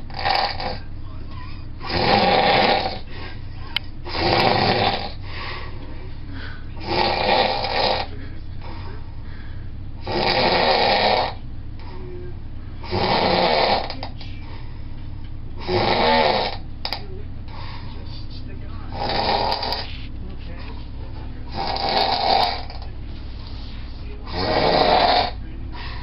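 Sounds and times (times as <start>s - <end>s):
person snoring: 0.0s - 0.8s, 1.8s - 3.1s, 4.1s - 5.7s, 6.7s - 8.8s, 10.0s - 11.4s, 12.8s - 14.1s, 15.6s - 16.6s, 18.9s - 20.0s, 21.5s - 22.8s, 24.2s - 26.0s.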